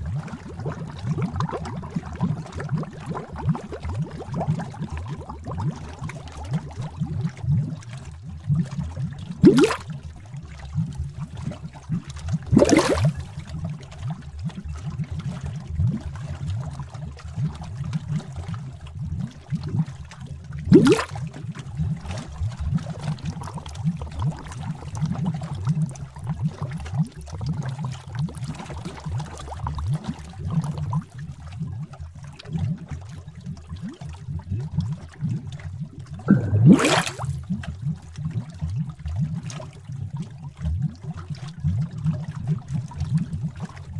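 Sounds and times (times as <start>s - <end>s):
thick liquid bubbling: 0.0s - 43.9s
big bubble bursting: 9.4s - 10.0s, 12.5s - 13.4s, 20.7s - 21.2s, 36.3s - 37.5s.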